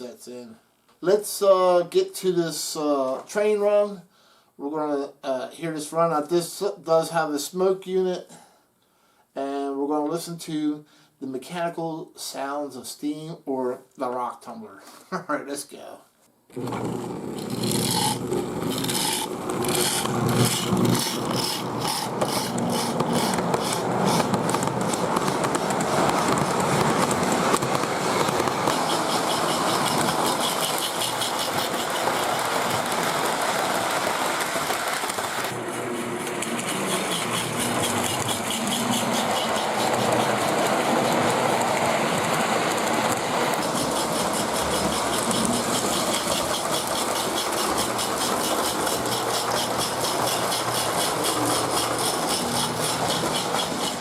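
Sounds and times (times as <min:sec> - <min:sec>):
toy steam locomotive chuffing: 0:16.6 - 0:54.0
train clattering on track: 0:19.6 - 0:35.6, 0:36.4 - 0:54.0.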